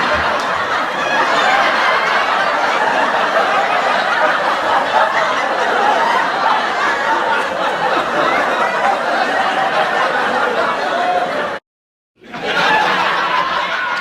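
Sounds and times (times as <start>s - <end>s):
audience laughing: 0.0s - 11.6s, 12.2s - 14.0s.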